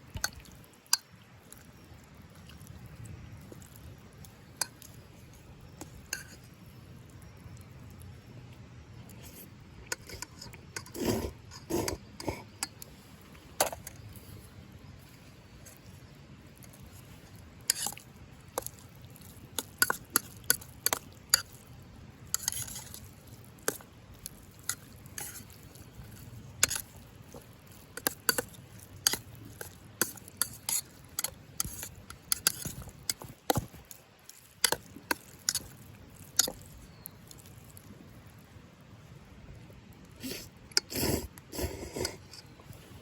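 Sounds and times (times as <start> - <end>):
utensils scraping a pot: 5.8 - 6.5, 9.2 - 12.9, 17.1 - 18.0, 22.3 - 23.0, 24.6 - 35.7, 40.2 - 42.6.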